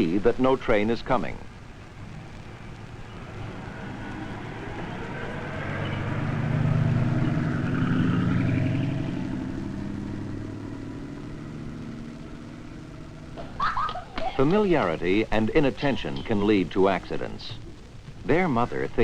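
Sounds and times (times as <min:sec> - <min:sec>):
vehicle engine passing: 0:02.8 - 0:13.9.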